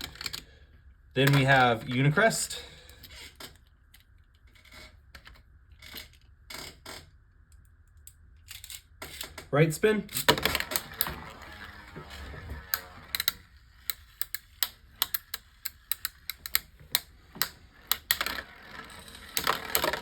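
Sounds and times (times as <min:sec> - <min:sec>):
sharp plastic clicks: 0:10.1 - 0:18.5
spinning tops whirring: 0:10.2 - 0:20.0.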